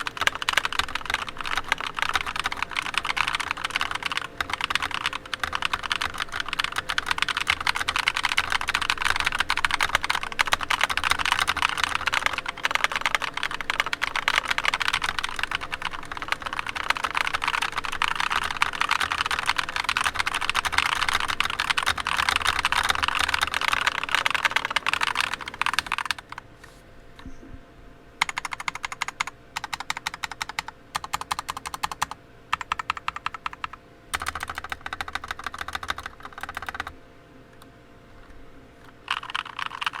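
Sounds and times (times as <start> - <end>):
mechanical keyboard typing: 0.0 - 26.4, 28.2 - 36.9, 38.1 - 40.0.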